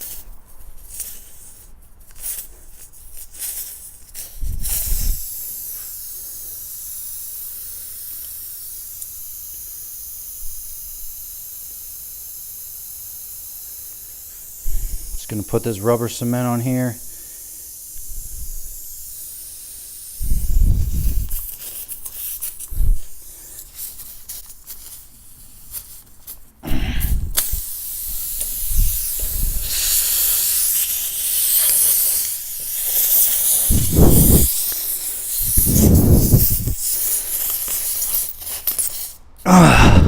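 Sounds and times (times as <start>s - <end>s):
air hissing out of a tire: 0.0s - 40.0s
dull low thumps: 26.7s - 27.4s, 33.7s - 34.5s, 35.5s - 36.8s.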